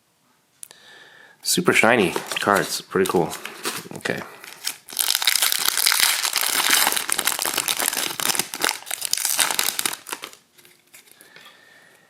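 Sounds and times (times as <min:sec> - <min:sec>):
wrapper crinkling and tearing: 0:02.0 - 0:11.3.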